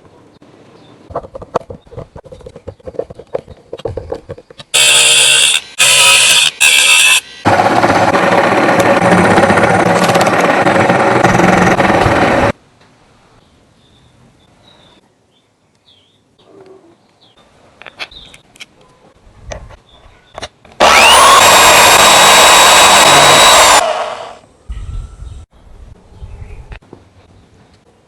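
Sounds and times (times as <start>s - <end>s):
power tool running: 4.7s - 12.6s, 20.8s - 24.4s.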